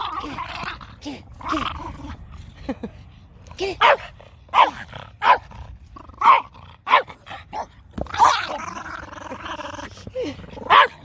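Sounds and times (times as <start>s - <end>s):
dog barking: 3.8s - 5.4s, 6.2s - 8.4s, 10.7s - 10.9s.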